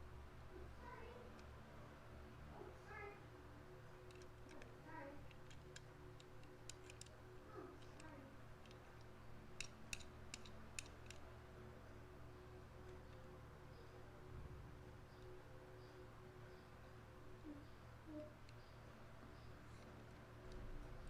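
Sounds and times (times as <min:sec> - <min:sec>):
low steady hum: 0:00.0 - 0:21.0
plastic toy car clicks: 0:04.0 - 0:07.1, 0:07.8 - 0:11.2.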